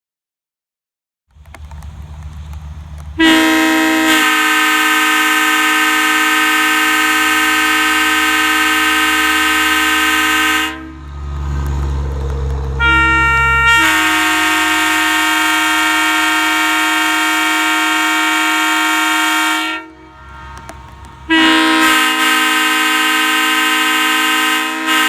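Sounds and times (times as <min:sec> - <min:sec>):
train horn chord blast: 0:03.2 - 0:11.3, 0:12.8 - 0:25.0
low rumble: 0:10.8 - 0:22.2.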